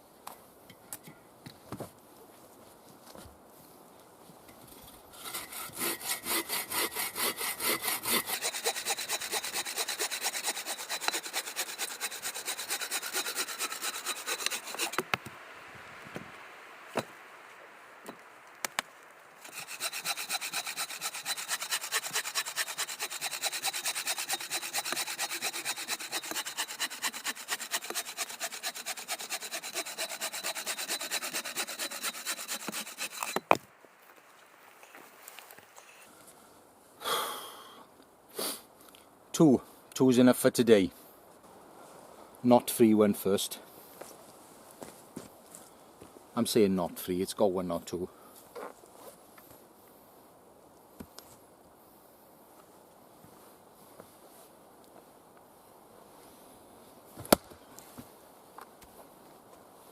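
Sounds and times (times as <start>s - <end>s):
hand saw cutting log: 5.2s - 15.1s, 19.4s - 33.5s.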